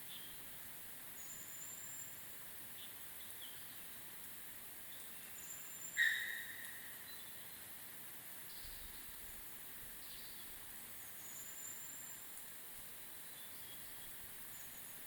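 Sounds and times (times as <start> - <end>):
faint high bird calls: 5.0 - 7.6.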